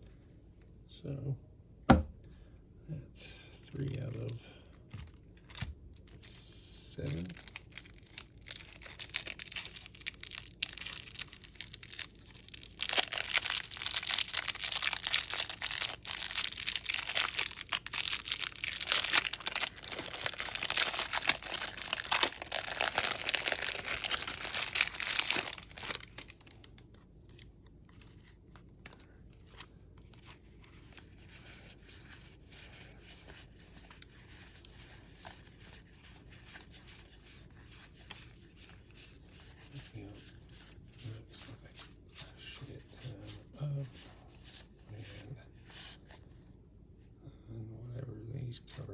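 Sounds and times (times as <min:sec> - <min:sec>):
card pack wrapper tearing: 0:07.0 - 0:26.9.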